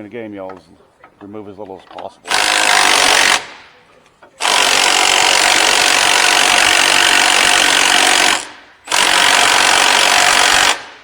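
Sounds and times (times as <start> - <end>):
power tool running: 2.3 - 3.6, 4.4 - 11.0.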